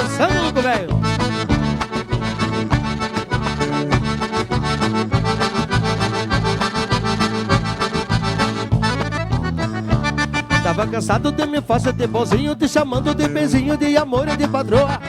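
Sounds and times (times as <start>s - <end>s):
steady percussive beat: 0.0s - 11.2s
accordion melody: 0.0s - 15.0s
bass line: 0.0s - 15.0s.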